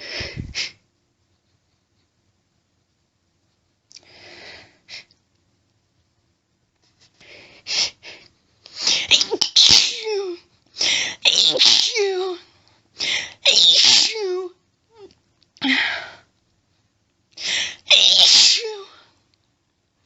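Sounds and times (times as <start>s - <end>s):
woman hitching breaths: 0.0s - 0.8s
woman sneezing: 8.8s - 12.1s, 13.4s - 14.3s, 17.8s - 19.0s.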